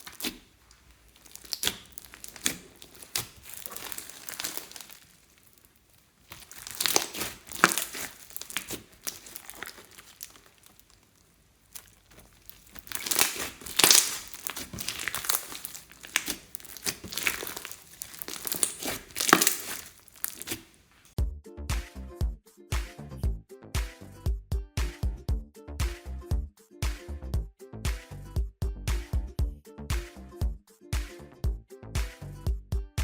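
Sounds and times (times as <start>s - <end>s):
slime squished by hand: 0.0s - 21.2s.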